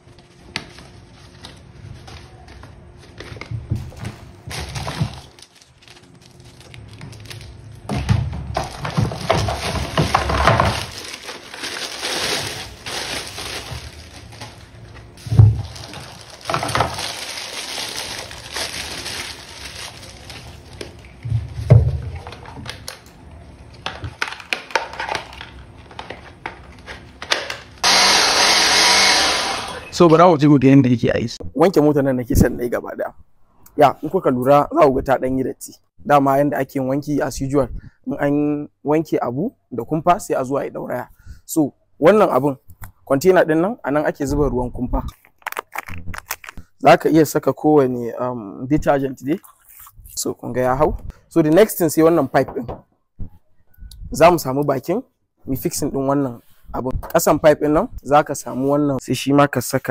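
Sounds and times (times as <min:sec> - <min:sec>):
packaging rustling and crackling: 0:04.4 - 0:07.9, 0:08.5 - 0:21.3, 0:45.1 - 0:46.7
steady whirring: 0:27.8 - 0:29.9.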